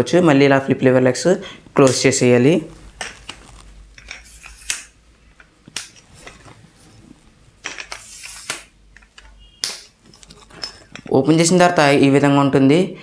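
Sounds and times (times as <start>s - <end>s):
tripod legs sliding: 2.7s - 11.1s
tripod clattering: 2.9s - 7.0s
tripod leg locks snapping: 3.0s - 6.5s.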